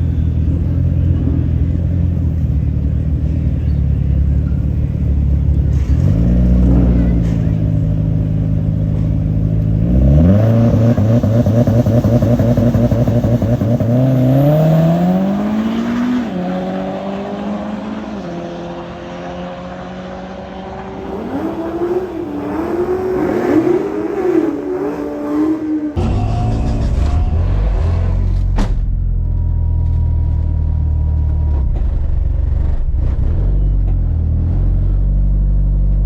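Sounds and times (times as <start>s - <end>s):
drag race car accelerating: 8.9s - 28.6s.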